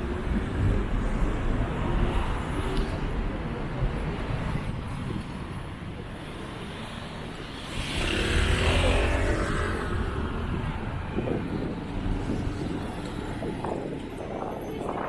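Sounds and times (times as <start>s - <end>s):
vehicle passing by: 7.6s - 10.8s.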